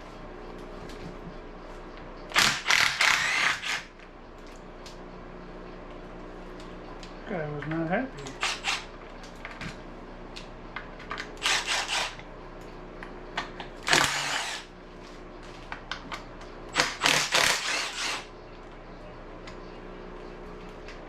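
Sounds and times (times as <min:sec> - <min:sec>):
power tool spinning fasteners: 0:02.3 - 0:03.9, 0:08.2 - 0:08.9, 0:11.3 - 0:12.2, 0:13.8 - 0:14.7, 0:16.7 - 0:18.3.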